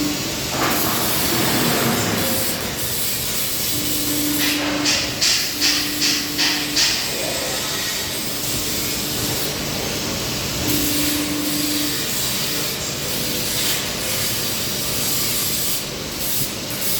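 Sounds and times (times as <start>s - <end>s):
machine hum: 0.0s - 6.7s
press brake machine hissing: 0.0s - 8.1s.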